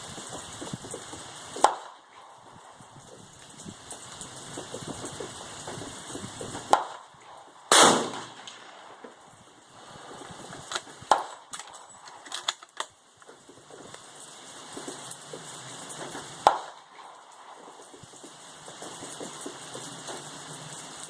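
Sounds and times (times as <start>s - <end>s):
sharp cracks and knocks: 0.2s - 2.3s, 4.6s - 7.1s, 7.7s - 9.2s, 10.5s - 14.0s, 16.0s - 20.3s
rifle shot: 1.6s - 2.0s, 6.7s - 7.0s, 7.7s - 9.1s, 16.4s - 17.1s.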